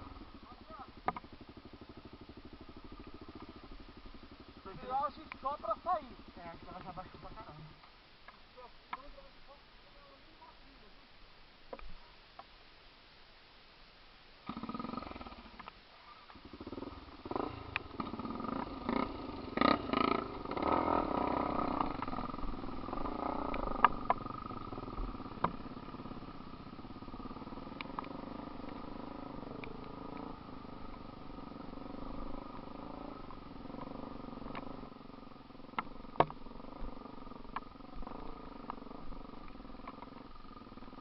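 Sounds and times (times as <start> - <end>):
off-road vehicle engine revving: 0.0 - 7.8, 16.3 - 41.0.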